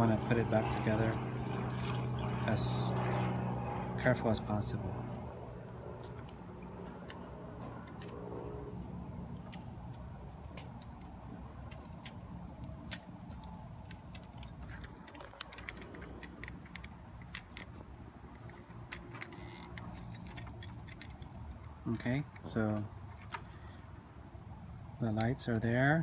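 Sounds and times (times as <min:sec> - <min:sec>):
low background hum: 0:00.0 - 0:26.0
clicks of plastic parts: 0:09.4 - 0:23.7.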